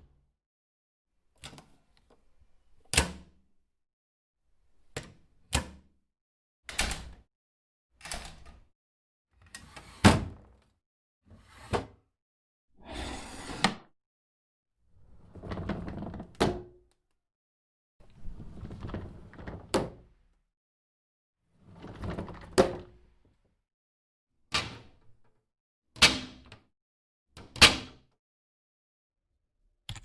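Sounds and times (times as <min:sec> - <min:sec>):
door opening and closing sweep: 0:12.8 - 0:13.8.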